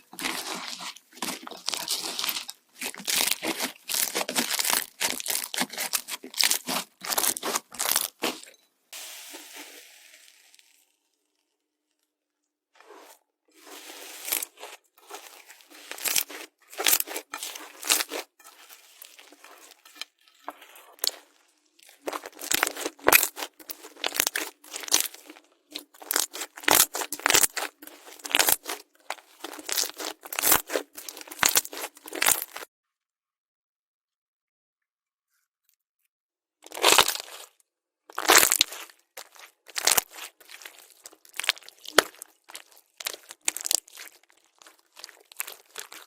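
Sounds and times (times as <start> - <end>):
slime crackling and popping: 0.1 - 8.4, 14.0 - 20.1, 20.9 - 32.7, 36.7 - 37.5, 38.1 - 46.0.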